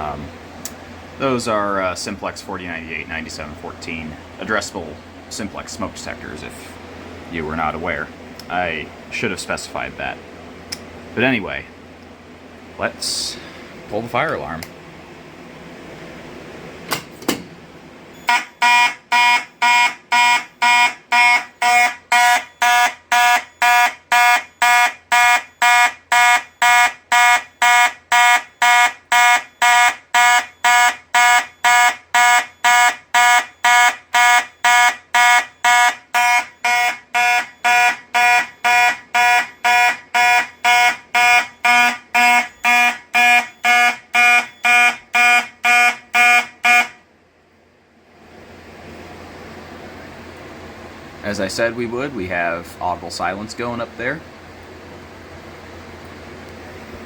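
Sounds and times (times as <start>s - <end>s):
fire alarm horn blasts: 18.1s - 47.0s.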